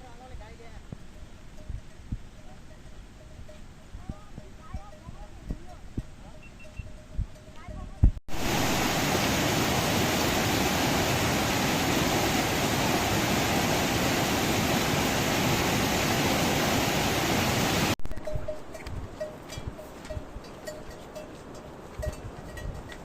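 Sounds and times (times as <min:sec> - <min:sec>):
rushing water: 0:08.3 - 0:18.0.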